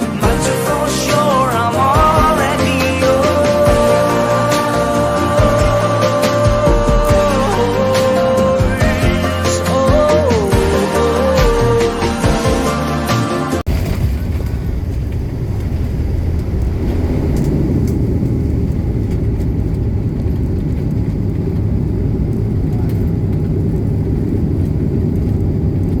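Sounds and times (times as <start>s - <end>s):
airliner cabin low rumble: 13.7s - 26.0s.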